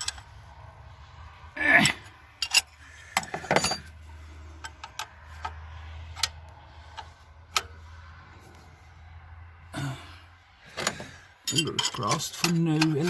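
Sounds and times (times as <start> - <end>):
steady low hum: 0.0 - 13.0
metal tools clicking and clinking: 1.8 - 3.9, 10.8 - 13.0.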